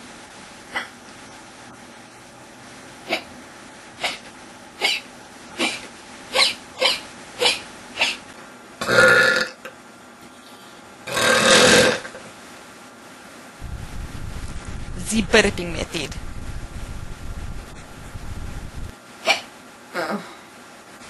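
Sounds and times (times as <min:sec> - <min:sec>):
person hiccuping: 0:04.0 - 0:08.2, 0:19.2 - 0:20.3
loud burps: 0:08.8 - 0:09.7, 0:11.0 - 0:12.2.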